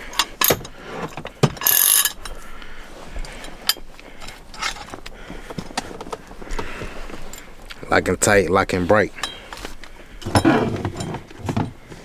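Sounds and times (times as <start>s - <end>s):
rustling: 0.0s - 7.9s, 8.7s - 12.0s
metal lock clicks: 0.1s - 0.8s.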